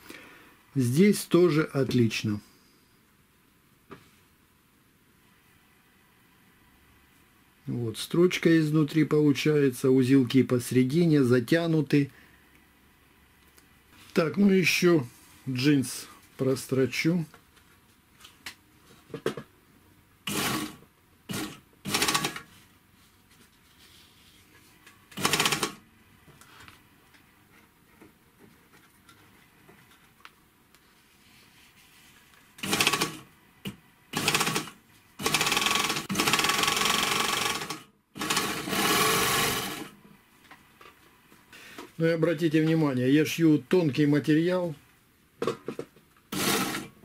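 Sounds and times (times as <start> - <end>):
overlock sewing machine running: 20.3 - 22.5, 25.1 - 25.8, 32.6 - 33.3, 34.1 - 40.0, 46.3 - 46.9.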